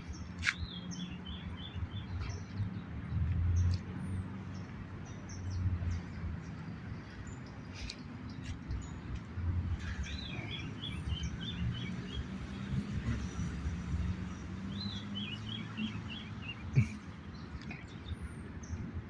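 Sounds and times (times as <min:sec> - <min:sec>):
bird chirping: 0:09.8 - 0:18.9.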